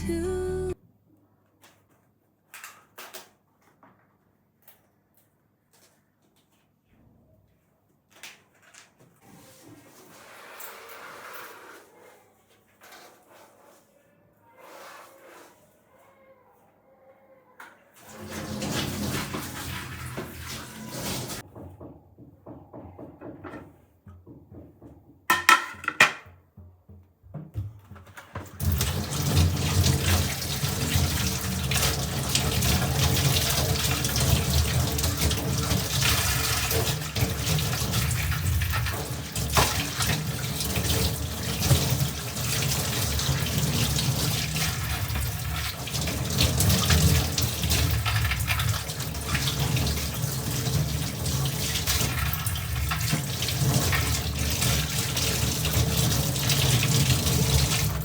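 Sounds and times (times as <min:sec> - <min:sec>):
water running from tap into sink: 0:18.0 - 0:21.4, 0:28.6 - 0:58.0.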